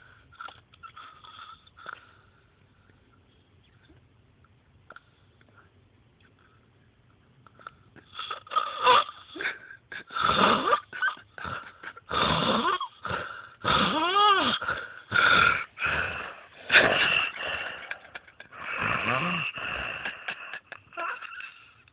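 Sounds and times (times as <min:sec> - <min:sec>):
man snoring heavily: 0:08.1 - 0:20.4.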